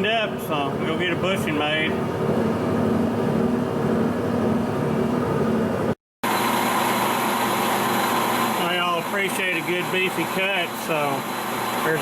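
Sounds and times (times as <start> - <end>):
metalworking machine humming: 0.0 - 12.0
metal lathe whining: 6.3 - 12.0.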